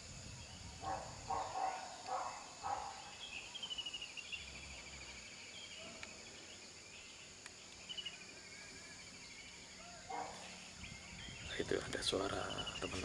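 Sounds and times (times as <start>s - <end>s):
small birds trilling: 0.0s - 13.0s.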